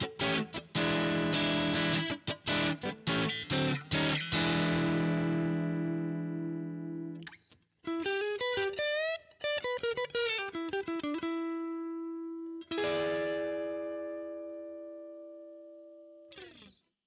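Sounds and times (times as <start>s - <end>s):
overdriven electric guitar: 0.0s - 16.8s.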